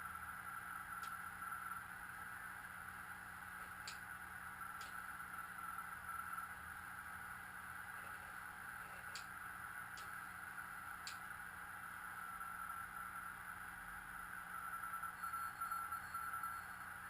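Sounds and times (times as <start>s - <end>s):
static clicks: 4.8s - 5.1s
faint morse code tone: 14.6s - 17.0s.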